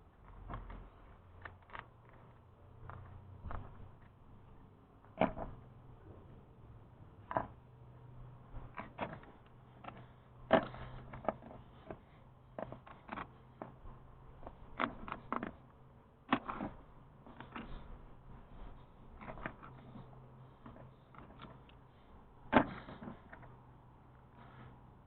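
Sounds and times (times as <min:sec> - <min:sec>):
faint low hum: 0:00.0 - 0:25.0
hand tools clicking and knocking: 0:08.6 - 0:23.7.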